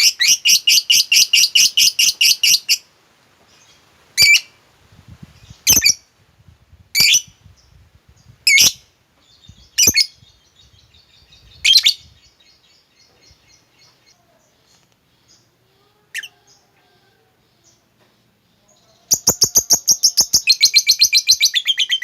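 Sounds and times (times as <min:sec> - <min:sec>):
bird shrill calls: 0:19.1 - 0:22.0.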